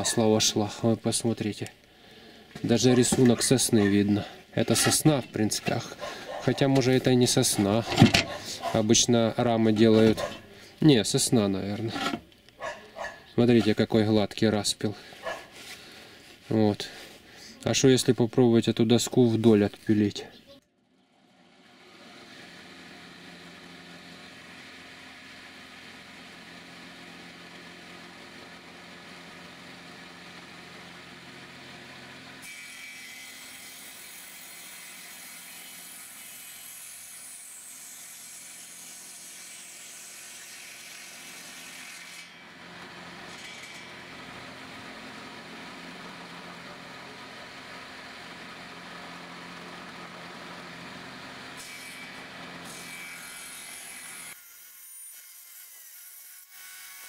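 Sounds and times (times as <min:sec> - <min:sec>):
saw cutting through board: 0:02.6 - 0:10.5, 0:11.2 - 0:13.9, 0:21.6 - 0:57.0
circular saw motor hum: 0:42.4 - 0:53.2.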